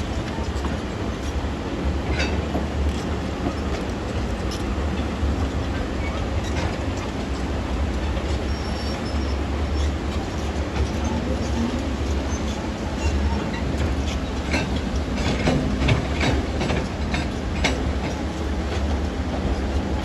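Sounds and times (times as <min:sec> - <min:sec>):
diesel engine rumble: 0:00.0 - 0:20.0.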